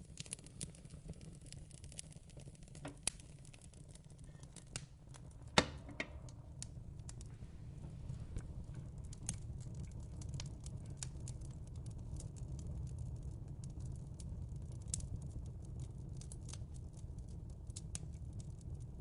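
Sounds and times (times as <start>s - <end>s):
sharp pops and snaps: 0.0s - 7.4s
wood fire crackling: 0.0s - 19.0s
low steady rumble: 2.6s - 19.0s.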